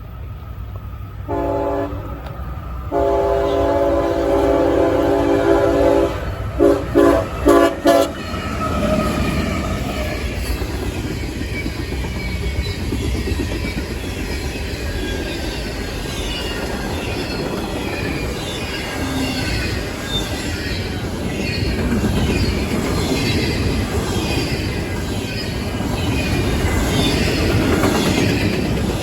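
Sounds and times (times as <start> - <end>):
train running past: 0.0 - 29.0
locomotive horn blasts: 1.3 - 2.2, 2.9 - 8.2
wheels squealing on rail: 1.3 - 29.0.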